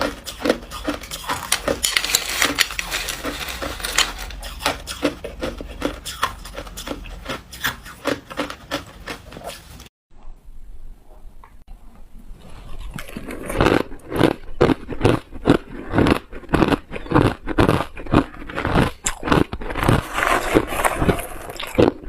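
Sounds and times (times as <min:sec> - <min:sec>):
person chewing ice: 0:00.0 - 0:09.8, 0:12.6 - 0:22.0.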